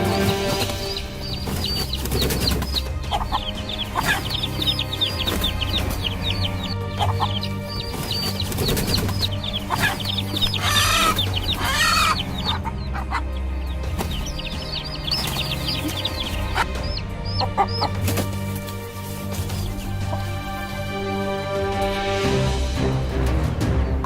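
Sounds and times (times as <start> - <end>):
high falling chirps: 0.0 - 12.9, 13.6 - 18.5
loud chicken calls: 0.0 - 18.3
chickens clucking: 0.0 - 22.2.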